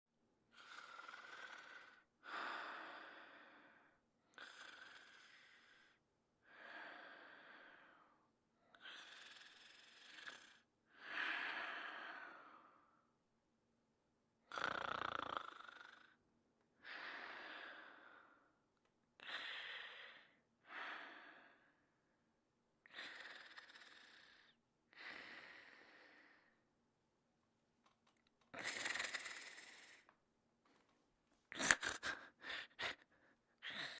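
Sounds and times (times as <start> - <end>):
person snoring lightly: 0.5 - 2.0, 8.8 - 10.6, 14.5 - 16.2, 28.6 - 30.1.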